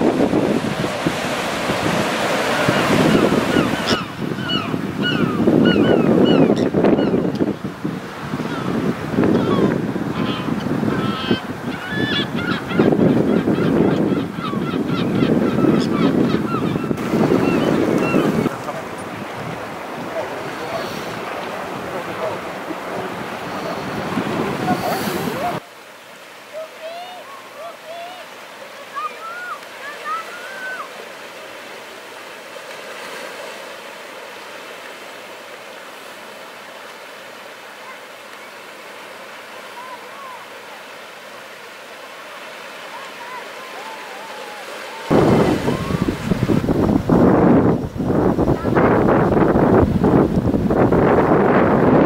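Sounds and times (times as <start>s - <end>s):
surf rushing: 0.0s - 52.0s
waves breaking: 0.0s - 52.0s
wind: 0.0s - 52.0s
flock of birds calling: 0.8s - 7.3s, 8.4s - 25.6s, 42.4s - 46.2s.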